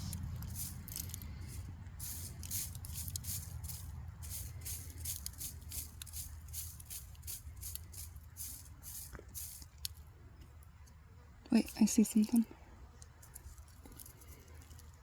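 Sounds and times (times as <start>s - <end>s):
sand and gravel scraping: 0.0s - 10.0s.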